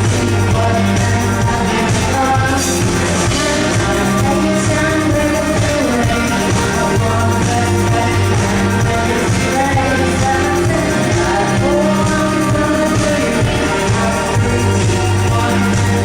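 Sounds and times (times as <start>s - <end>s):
heavy bass line: 0.0s - 16.0s
rock band with singer: 0.0s - 16.0s.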